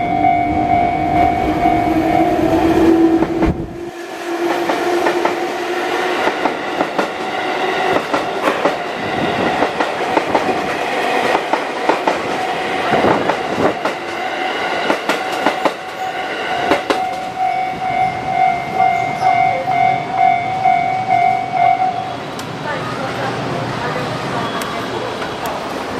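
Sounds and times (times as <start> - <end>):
level crossing warning bell: 0.0 - 3.1, 15.8 - 22.2
train wheels clacking over joints: 6.2 - 7.3, 7.9 - 17.4.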